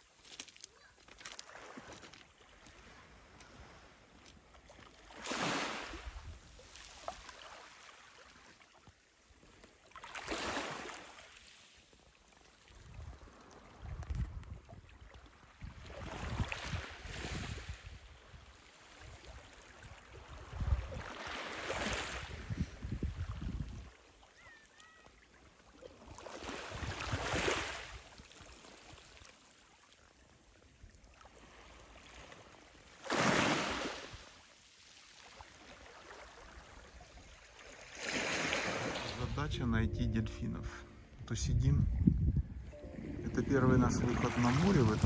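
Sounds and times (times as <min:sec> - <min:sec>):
wind rumble on microphone: 0:12.8 - 0:15.0, 0:20.2 - 0:21.1, 0:22.2 - 0:23.9, 0:41.1 - 0:45.0
surf washing against shore: 0:43.2 - 0:45.0.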